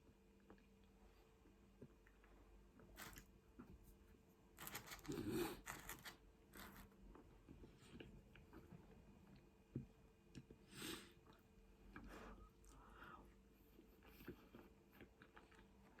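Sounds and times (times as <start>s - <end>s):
food crunching and tearing: 4.6s - 6.8s
quiet chewing: 4.6s - 16.0s.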